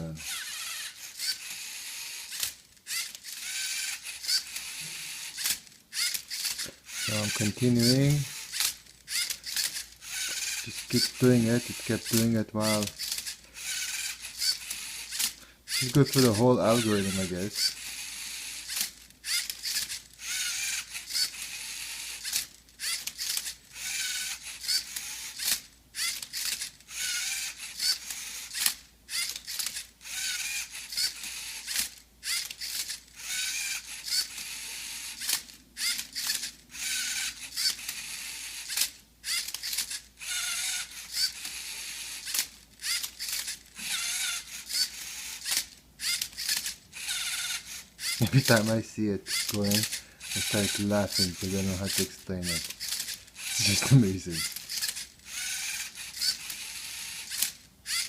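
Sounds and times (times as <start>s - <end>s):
robot motors turning cube: 0.0s - 58.0s.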